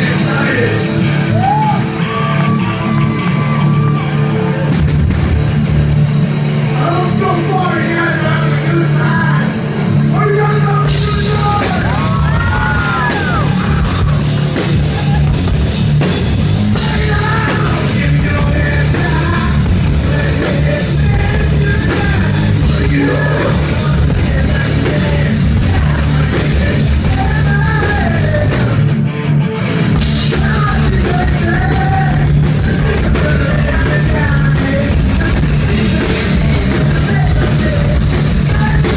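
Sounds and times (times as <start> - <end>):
drum kit: 0.0 - 38.9
rock band playing: 0.0 - 38.9
person singing: 6.7 - 15.4, 16.7 - 29.0, 30.3 - 38.9.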